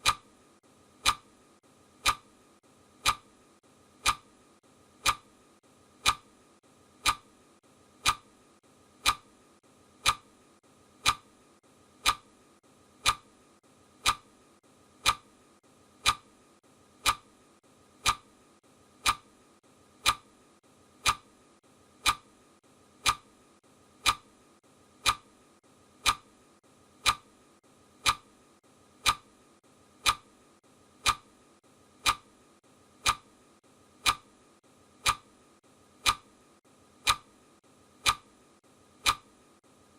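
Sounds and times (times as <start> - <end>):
clock ticking: 0.0 - 0.3, 1.0 - 1.3, 2.0 - 2.3, 3.0 - 3.4, 4.0 - 4.4, 5.0 - 5.4, 6.0 - 6.4, 7.0 - 7.4, 8.0 - 8.4, 9.0 - 9.4, 10.0 - 10.4, 11.0 - 11.4, 12.0 - 12.4, 13.0 - 13.4, 14.0 - 14.4, 15.0 - 15.4, 16.0 - 16.4, 17.0 - 17.4, 18.0 - 18.4, 19.0 - 19.4, 20.0 - 20.4, 21.0 - 21.4, 22.0 - 22.4, 23.0 - 23.4, 24.0 - 24.4, 25.0 - 25.4, 26.0 - 26.4, 27.0 - 27.4, 28.0 - 28.4, 29.0 - 29.4, 30.0 - 30.4, 31.0 - 31.4, 32.0 - 32.4, 33.0 - 33.4, 34.0 - 34.4, 35.0 - 35.4, 36.0 - 36.3, 37.0 - 37.4, 38.0 - 38.3, 39.0 - 39.4.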